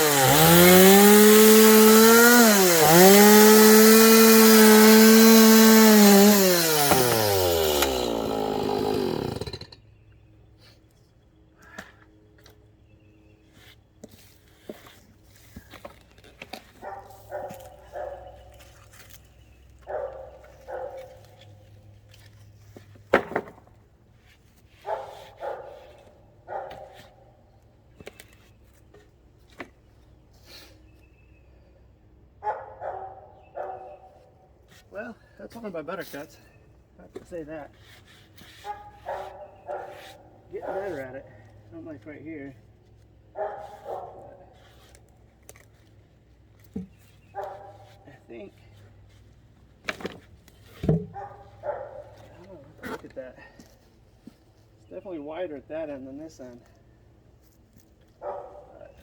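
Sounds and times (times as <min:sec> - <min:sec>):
chainsaw cutting log: 0:00.0 - 0:09.8, 0:37.1 - 0:42.6, 0:43.4 - 0:45.7, 0:46.6 - 0:48.5, 0:49.8 - 0:53.3
dog barking: 0:16.8 - 0:18.3, 0:19.8 - 0:21.2, 0:24.8 - 0:25.9, 0:26.5 - 0:27.0, 0:32.4 - 0:34.2, 0:38.6 - 0:40.0, 0:43.4 - 0:44.6, 0:47.4 - 0:47.9, 0:51.1 - 0:52.2, 0:58.2 - 0:59.0.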